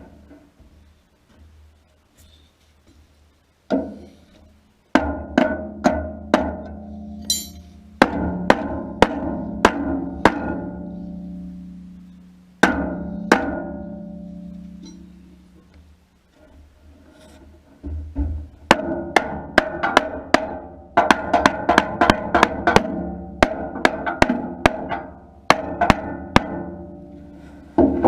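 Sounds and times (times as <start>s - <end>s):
hammer striking steel: 7.2s - 10.6s.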